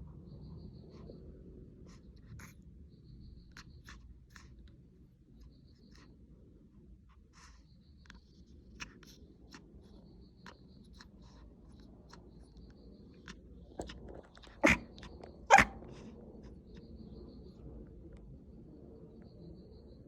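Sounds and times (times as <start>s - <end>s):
dog making short loud sounds: 14.5s - 14.9s, 15.5s - 15.8s.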